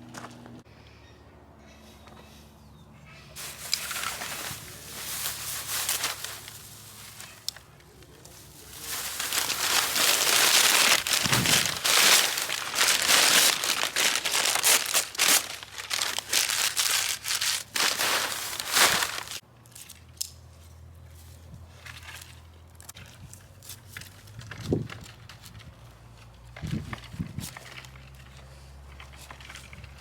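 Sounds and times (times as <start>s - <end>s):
crumpling and crackling handling noise: 3.4s - 20.1s, 21.2s - 30.0s.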